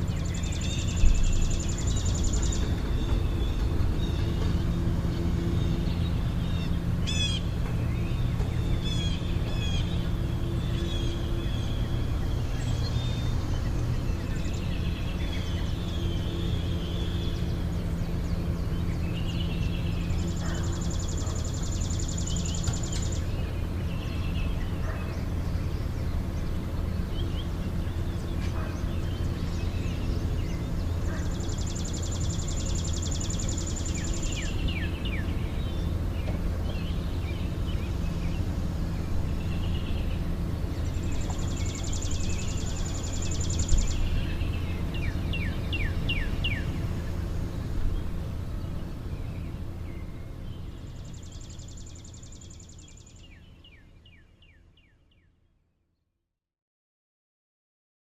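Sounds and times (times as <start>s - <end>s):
steady low rumble: 0.0s - 53.7s
birds chirping: 0.0s - 55.3s.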